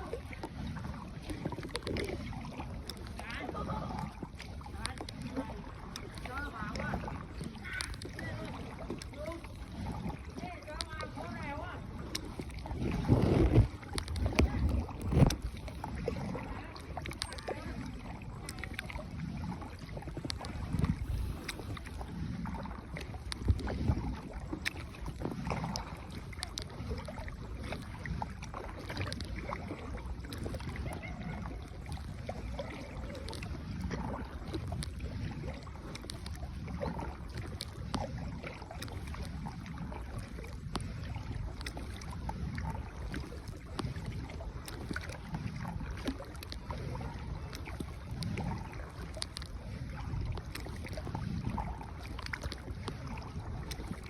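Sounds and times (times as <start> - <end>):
paddle strokes in water: 0.0 - 54.0
wind rumble on microphone: 0.0 - 54.0.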